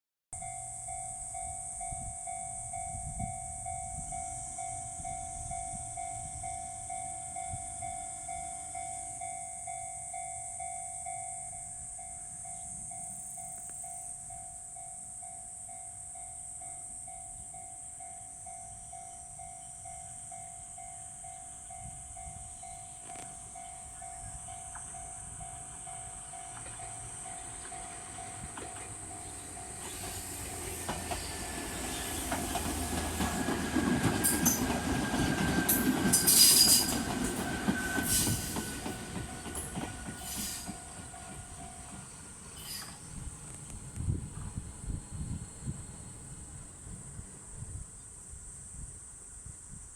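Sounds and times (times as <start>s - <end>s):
level-crossing alarm ringing: 0.4s - 43.3s
train rumbling over crossing: 0.4s - 48.0s.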